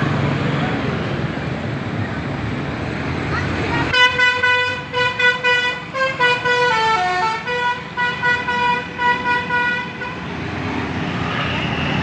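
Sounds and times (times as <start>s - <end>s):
musical multi-note air horn: 4.0s - 10.2s.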